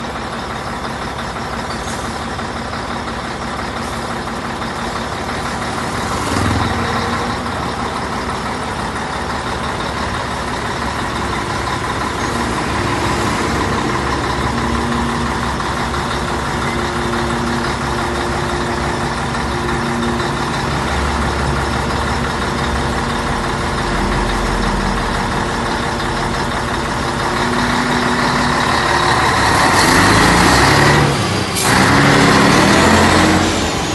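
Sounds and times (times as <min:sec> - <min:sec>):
diesel truck engine rumbling: 0:00.0 - 0:33.9.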